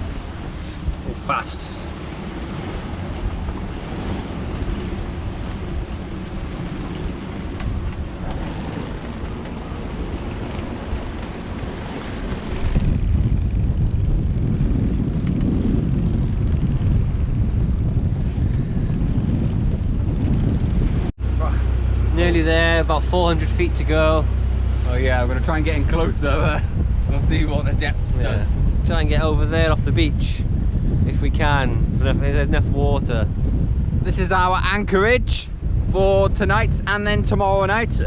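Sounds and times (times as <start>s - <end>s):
water rushing: 0.0s - 13.4s, 21.2s - 28.9s
deep rumble: 0.0s - 38.0s
wind buffeting microphone: 0.0s - 38.0s.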